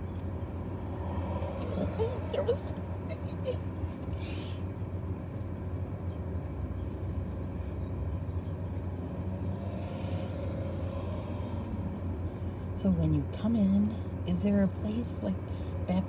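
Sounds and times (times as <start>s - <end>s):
car engine rumbling: 0.0s - 16.0s.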